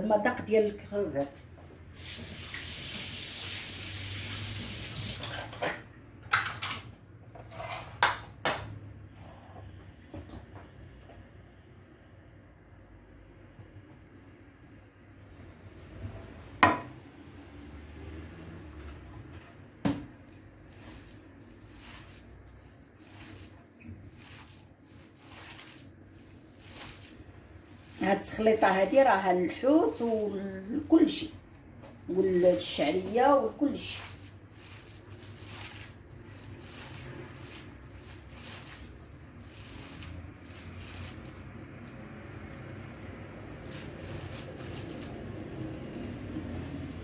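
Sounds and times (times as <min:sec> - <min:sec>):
kitchen tap running: 0:02.0 - 0:05.5, 0:20.6 - 0:46.7
dishes and utensils clinking: 0:05.2 - 0:08.8
wet squishing of food mixing: 0:20.1 - 0:47.0.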